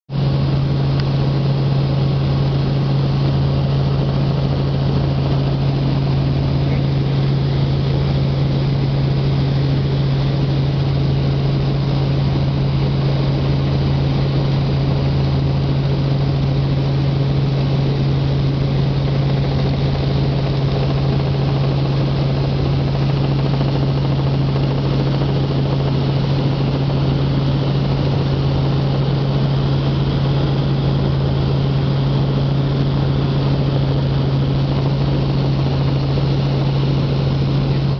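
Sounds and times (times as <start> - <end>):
helicopter engine and rotor drone: 0.1 - 37.9.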